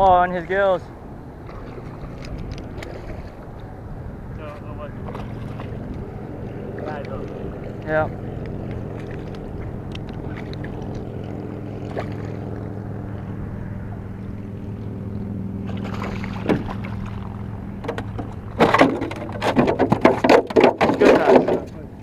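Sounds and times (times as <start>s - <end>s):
boat motor humming: 0.0s - 22.0s
knocks and clatters: 16.4s - 21.8s.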